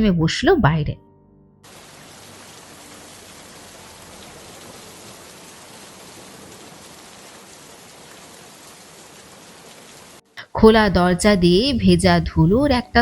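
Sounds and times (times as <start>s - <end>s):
heavy rain pouring: 1.6s - 10.8s.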